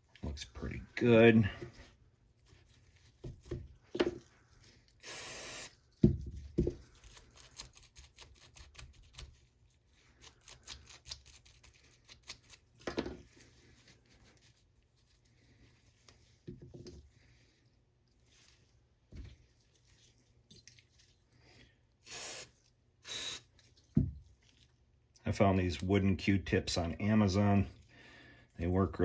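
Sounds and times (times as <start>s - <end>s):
short hiss: 22.0s - 23.4s.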